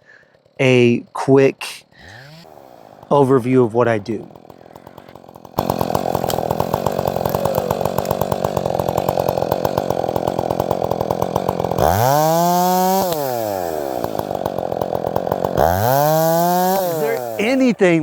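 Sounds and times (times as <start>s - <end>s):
chainsaw idling and revving: 0.0s - 18.0s.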